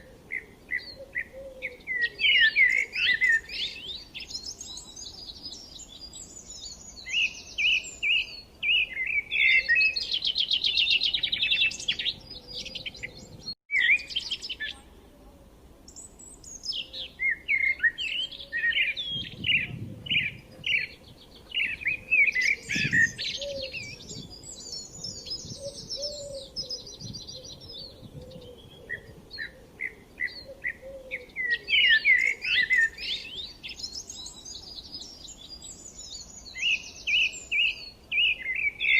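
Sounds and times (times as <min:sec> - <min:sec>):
songbirds chirping and singing: 0:00.0 - 0:15.0, 0:15.8 - 0:38.9.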